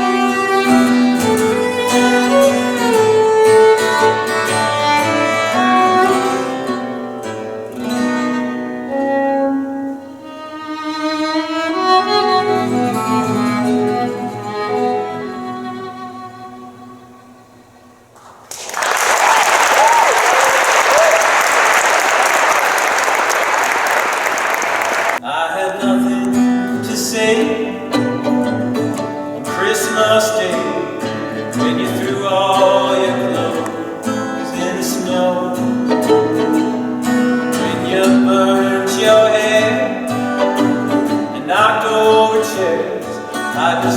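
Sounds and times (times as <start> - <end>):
live guitar music: 0.0 - 18.2, 25.8 - 43.9
audience applauding: 18.2 - 25.2.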